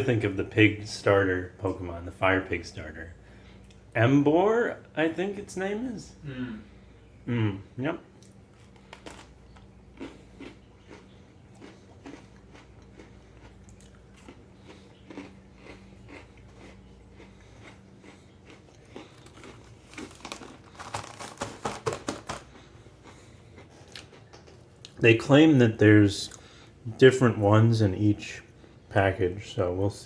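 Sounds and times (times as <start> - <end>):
cookies being chewed and crunched: 8.1 - 25.4.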